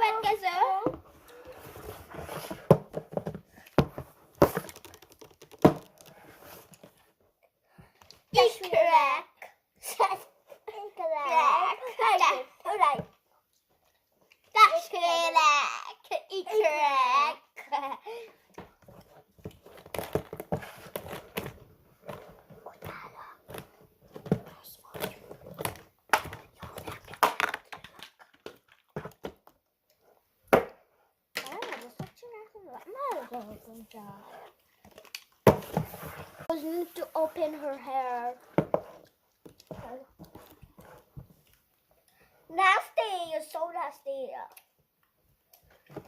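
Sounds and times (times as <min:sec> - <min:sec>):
objects being handled: 0:00.0 - 0:08.4, 0:18.4 - 0:30.7, 0:31.4 - 0:42.2.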